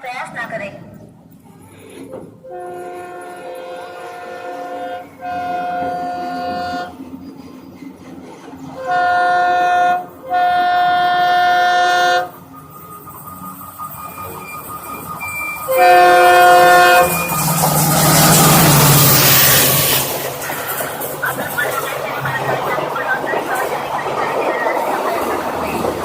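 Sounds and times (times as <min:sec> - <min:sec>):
oncoming train noise: 0:00.0 - 0:26.0
locomotive air horn honking: 0:02.4 - 0:07.0, 0:08.8 - 0:12.4, 0:15.6 - 0:20.1.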